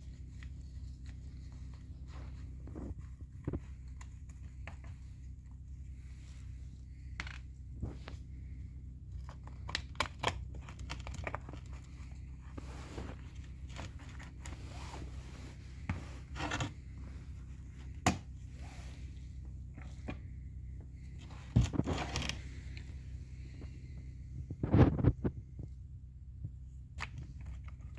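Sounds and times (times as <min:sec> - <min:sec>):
low hum: 0:00.0 - 0:27.9.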